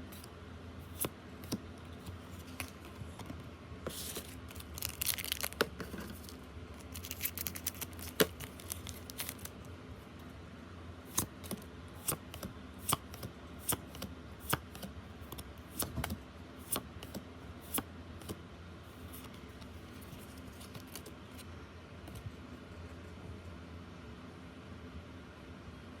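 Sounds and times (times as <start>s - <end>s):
cards clicking and snapping: 4.0s - 9.6s, 11.1s - 18.4s, 19.1s - 21.1s.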